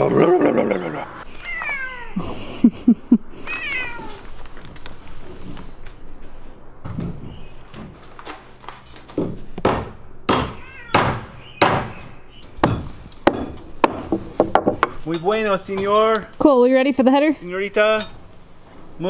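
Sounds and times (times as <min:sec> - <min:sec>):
sharp knocks: 0:09.0 - 0:16.0.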